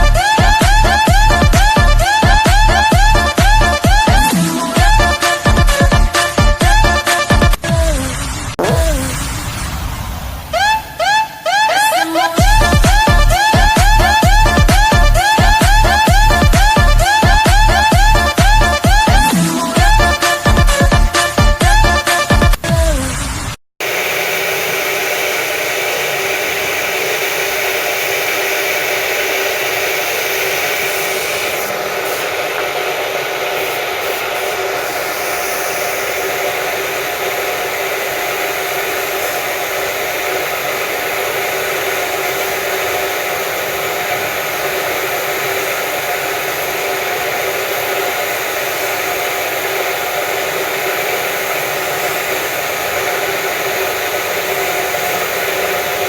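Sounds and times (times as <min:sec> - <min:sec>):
spray painting air hiss: 0:12.2 - 0:21.4, 0:23.4 - 0:56.0
motor hum: 0:12.4 - 0:22.0, 0:23.8 - 0:56.0.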